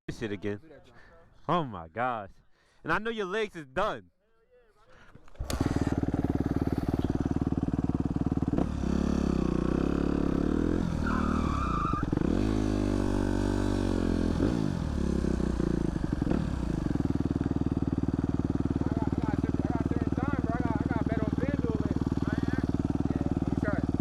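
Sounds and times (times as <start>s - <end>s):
dirt bike engine idling and revving: 5.3s - 24.0s.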